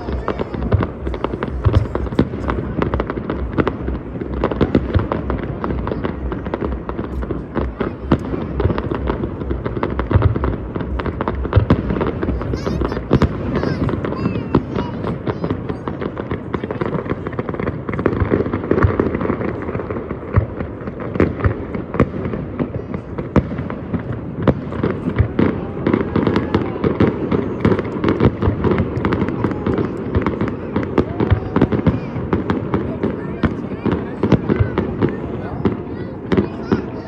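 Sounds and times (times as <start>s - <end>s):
fireworks bangs and crackles: 0.0s - 37.0s.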